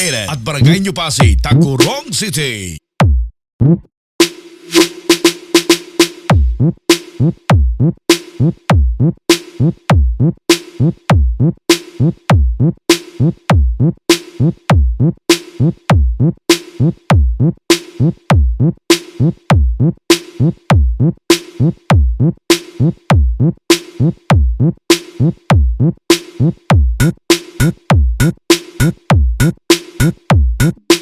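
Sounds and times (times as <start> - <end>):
deep kick drum: 1.2 - 1.5, 3.0 - 3.3, 6.3 - 6.7, 7.5 - 7.9, 8.7 - 9.1, 9.9 - 10.3, 11.1 - 11.5, 12.3 - 12.7, 13.5 - 13.9, 14.7 - 15.1, 15.9 - 16.3, 17.1 - 17.5, 18.3 - 18.7, 19.5 - 19.9, 20.7 - 21.1, 21.9 - 22.3, 23.1 - 23.5, 24.3 - 24.7, 25.5 - 25.9, 26.7 - 31.0.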